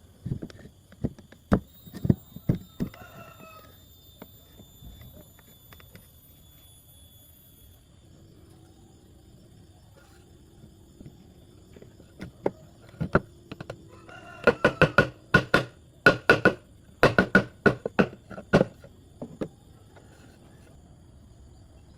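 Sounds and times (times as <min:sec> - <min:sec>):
wooden parts knocking together: 0:14.4 - 0:19.5.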